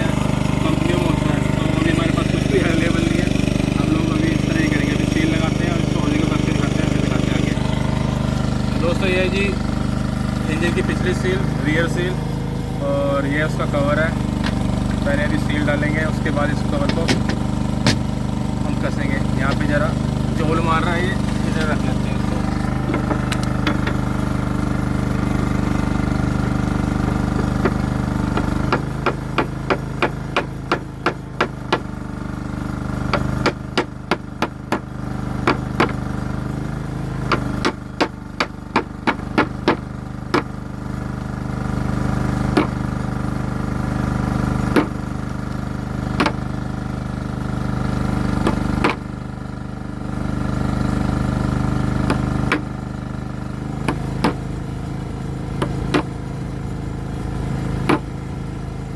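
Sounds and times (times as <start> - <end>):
steady machine drone: 0.0 - 58.9
hammer tapping metal: 16.8 - 18.1.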